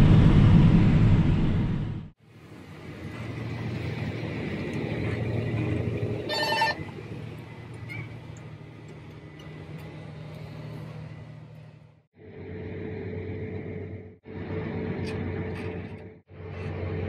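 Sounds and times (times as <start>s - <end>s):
short electronic beep: 6.3s - 6.8s.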